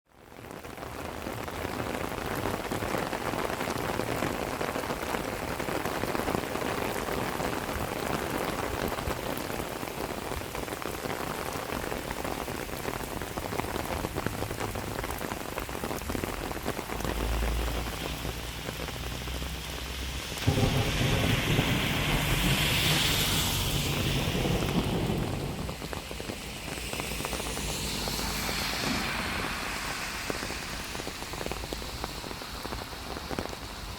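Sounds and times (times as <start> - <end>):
rain splashing on wet ground: 0.1 - 33.9
deep rushing sound: 19.9 - 31.7.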